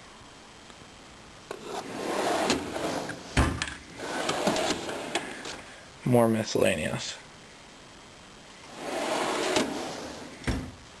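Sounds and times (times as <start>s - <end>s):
toolbox drawers sliding: 1.5s - 5.6s, 8.7s - 10.8s
drawer knocking shut: 2.4s - 4.9s, 10.4s - 10.8s.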